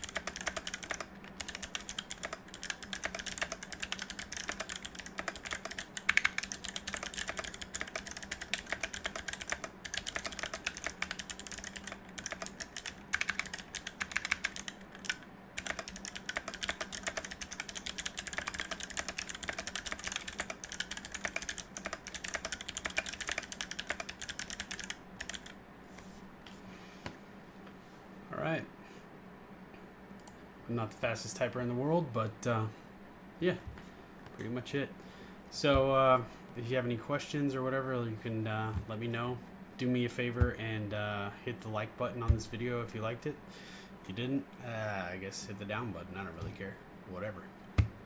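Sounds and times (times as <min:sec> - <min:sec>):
typing on mechanical keyboard: 0:00.0 - 0:25.6.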